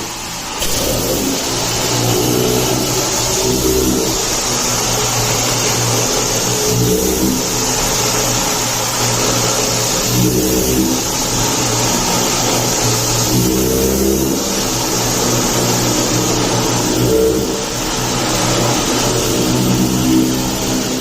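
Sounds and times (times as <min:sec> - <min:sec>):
humming tone: 0:00.0 - 0:05.2
loud hiss: 0:00.0 - 0:21.0
machine motor running: 0:00.0 - 0:21.0.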